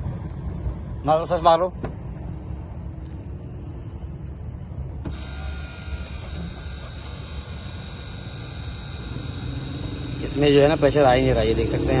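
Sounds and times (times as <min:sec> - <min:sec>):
electric whine with high tones: 0:05.1 - 0:12.0.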